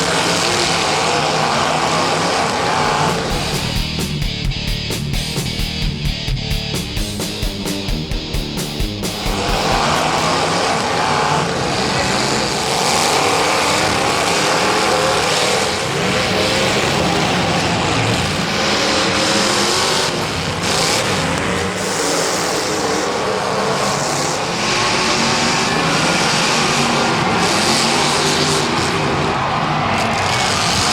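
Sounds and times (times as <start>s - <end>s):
track noise: 0.0s - 24.0s
car engines revving: 0.0s - 30.9s.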